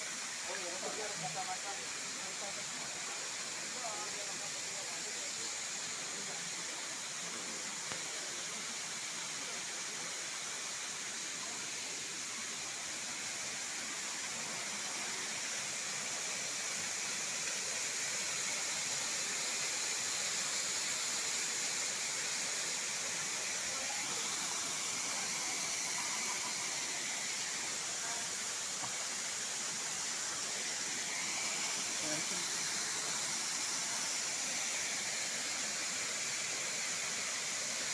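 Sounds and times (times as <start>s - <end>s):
waterfall rushing: 22.6s - 37.9s.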